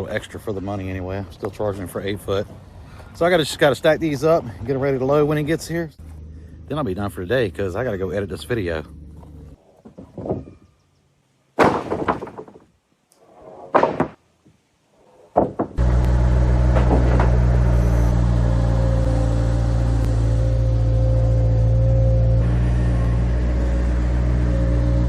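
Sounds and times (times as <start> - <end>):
steady engine hum: 4.4 - 9.6, 15.8 - 25.0
heavy wooden beams thudding: 9.8 - 10.6, 11.6 - 12.8, 13.5 - 14.3, 15.3 - 18.8.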